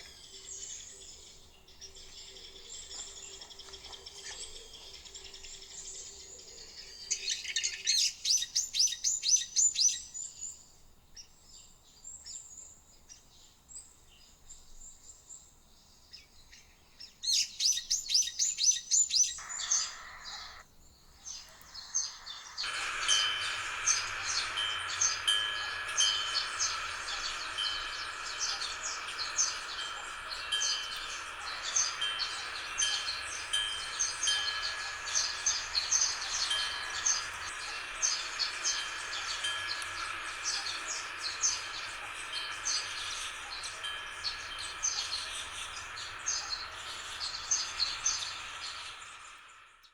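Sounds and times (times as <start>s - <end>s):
birds chirping and singing: 17.4s - 20.6s, 21.2s - 49.5s
steady hiss: 17.9s - 49.9s.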